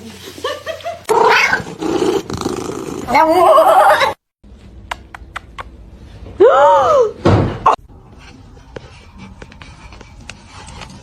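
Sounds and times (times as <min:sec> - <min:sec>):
loud thump: 0:07.2 - 0:07.8.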